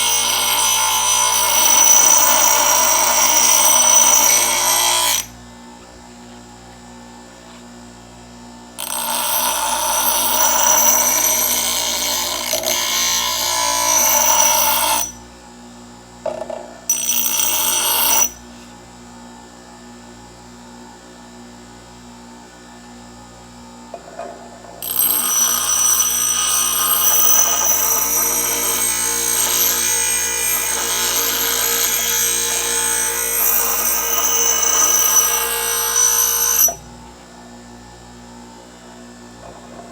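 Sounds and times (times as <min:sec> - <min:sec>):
grinding wheel running: 0:00.0 - 0:05.3, 0:08.8 - 0:15.1, 0:24.8 - 0:36.9
blade grinding with ringing tone: 0:00.0 - 0:05.4, 0:08.8 - 0:15.2, 0:16.9 - 0:18.4, 0:24.8 - 0:37.0.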